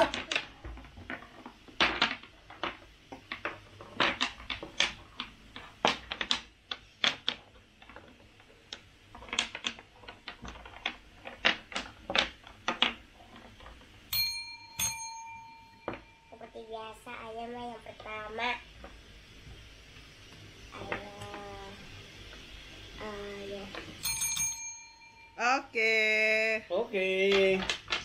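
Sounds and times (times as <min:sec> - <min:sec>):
game pieces clicking and tapping: 0:00.0 - 0:14.1, 0:20.8 - 0:24.0, 0:27.2 - 0:28.0
bell ding: 0:14.1 - 0:16.4, 0:24.0 - 0:25.6.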